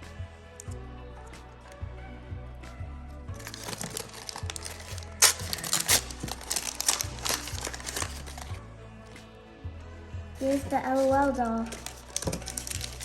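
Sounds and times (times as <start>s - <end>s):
background music: 0.0s - 13.0s
plastic wrapping crinkling: 3.4s - 8.6s, 10.4s - 13.0s.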